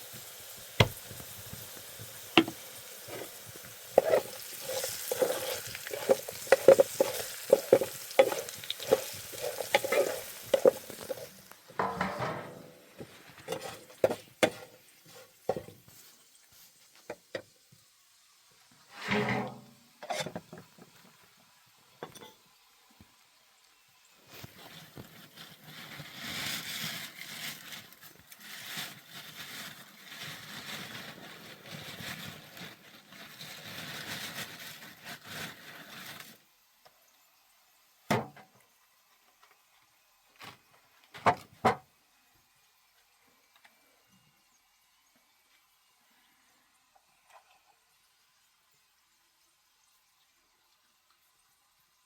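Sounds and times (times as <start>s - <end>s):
steady rustling or scraping: 0.8s - 16.2s, 18.8s - 20.4s, 24.4s - 36.4s
objects knocking and clicking: 2.4s - 3.3s, 4.0s - 14.7s.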